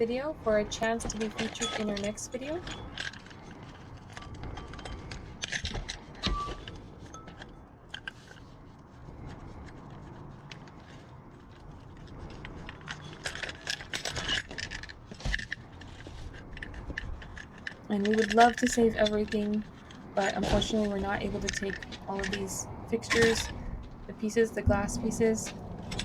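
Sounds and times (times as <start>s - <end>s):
scrap metal and glass clinking: 1.1s - 3.3s
metal ringing: 1.5s - 3.0s.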